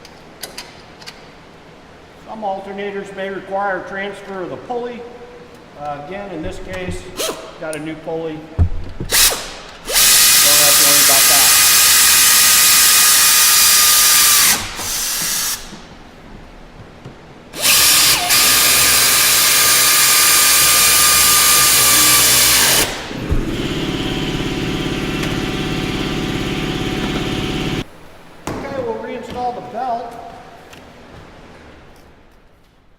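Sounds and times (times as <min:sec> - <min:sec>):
power tool buzzing: 0:09.1 - 0:15.8, 0:17.6 - 0:27.9
power tool whining: 0:09.1 - 0:15.8, 0:17.6 - 0:27.9.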